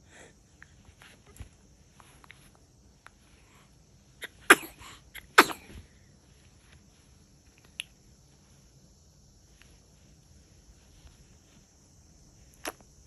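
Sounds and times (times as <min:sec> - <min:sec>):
baby sneezing: 0:04.2 - 0:05.8.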